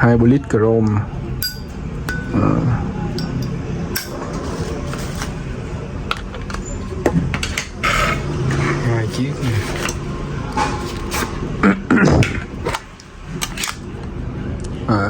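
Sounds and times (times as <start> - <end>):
metal lighters clinking and clicking: 3.2 - 4.2.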